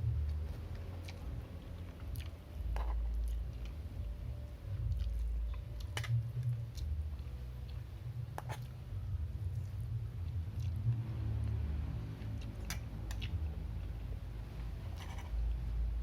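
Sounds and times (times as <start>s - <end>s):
person chewing: 0.3s - 3.8s, 4.9s - 7.8s, 9.5s - 10.8s, 12.2s - 13.5s.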